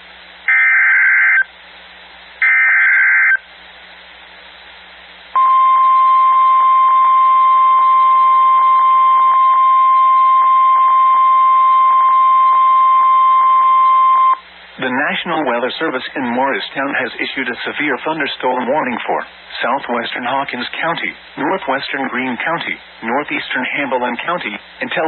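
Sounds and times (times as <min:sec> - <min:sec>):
steady alarm tone: 0:02.4 - 0:03.4
radio hiss: 0:14.3 - 0:25.0.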